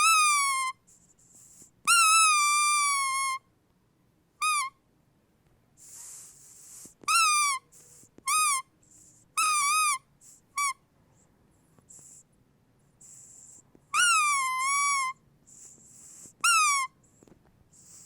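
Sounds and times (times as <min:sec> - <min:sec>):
squeaky dog toy squeaking: 0:00.0 - 0:00.8, 0:01.8 - 0:03.4, 0:04.4 - 0:04.8, 0:07.0 - 0:08.7, 0:09.3 - 0:10.8, 0:13.9 - 0:17.0
air hissing through squeaker: 0:13.0 - 0:17.2, 0:17.8 - 0:18.0.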